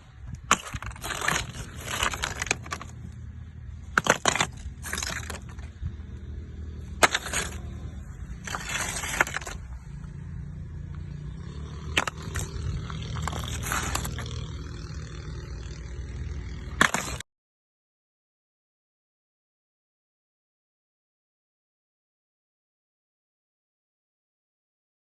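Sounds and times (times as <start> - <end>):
excavator engine running: 0.0 - 17.2
rock and bucket clattering: 0.3 - 3.2, 3.8 - 5.8, 6.9 - 9.7, 11.9 - 14.4, 16.8 - 17.2.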